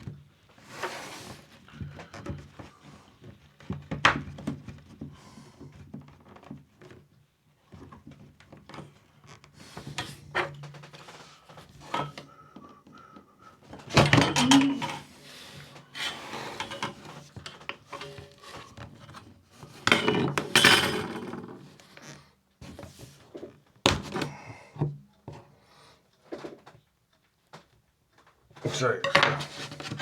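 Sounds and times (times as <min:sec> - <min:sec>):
clicks and knocks: 0:14.0 - 0:15.0.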